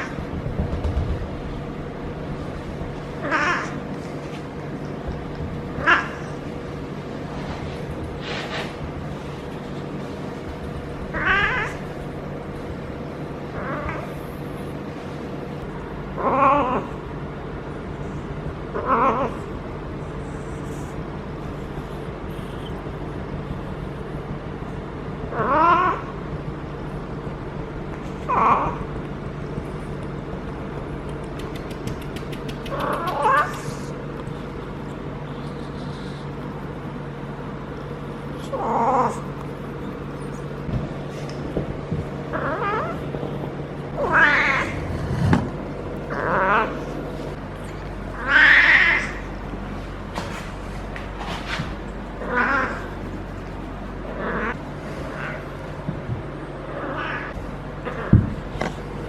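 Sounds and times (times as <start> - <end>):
steady low hum: 0.0 - 59.0
cat yowling: 3.2 - 3.9, 5.7 - 6.4, 11.1 - 11.9, 13.5 - 14.2, 16.2 - 17.0, 18.7 - 19.5, 25.3 - 26.1, 28.3 - 28.9, 32.7 - 33.9, 42.3 - 43.1, 43.9 - 44.9, 46.1 - 46.9, 48.1 - 49.3, 52.2 - 53.0, 56.7 - 58.3.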